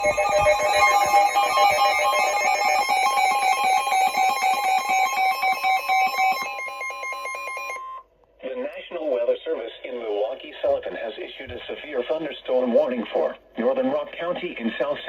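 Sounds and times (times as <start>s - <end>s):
electronic ringtone melody: 0.0s - 8.0s
steady high tone: 0.0s - 8.0s.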